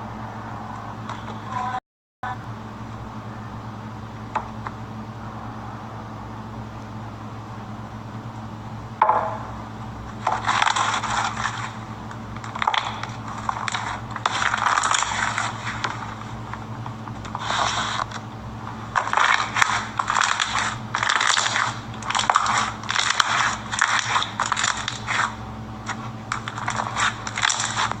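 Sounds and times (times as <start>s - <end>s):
steady low hum: 0.0s - 28.0s
slime squeezed crackling: 10.1s - 28.0s.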